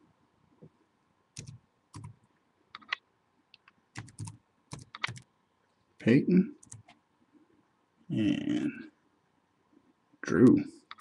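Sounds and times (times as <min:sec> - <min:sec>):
typing on computer keyboard: 0:01.4 - 0:02.2, 0:02.8 - 0:03.0, 0:04.0 - 0:05.3, 0:06.6 - 0:07.0.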